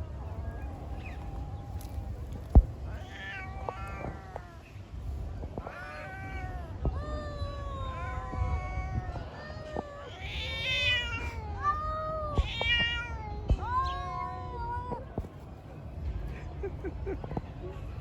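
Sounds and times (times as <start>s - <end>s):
cats yowling in a fight: 0.1s - 4.8s, 5.5s - 14.2s.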